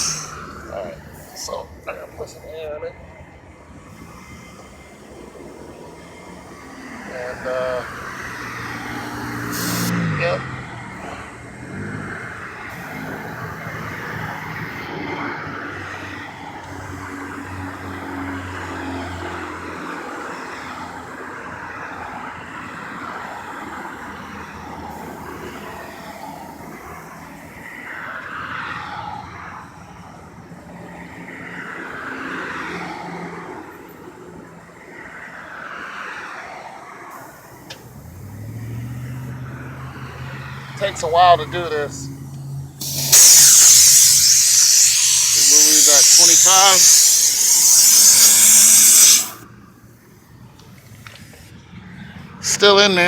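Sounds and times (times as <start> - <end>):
air compressor humming: 0.0 - 0.4, 9.4 - 9.9, 12.7 - 14.9, 42.8 - 49.4
air rushing through hose: 0.0 - 1.6, 3.9 - 10.0, 12.0 - 17.5, 42.8 - 49.5.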